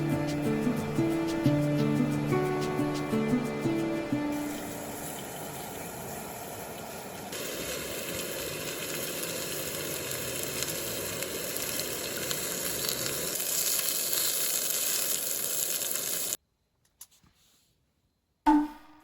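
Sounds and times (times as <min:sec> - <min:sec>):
sizzling crackling noise: 0:00.0 - 0:16.4.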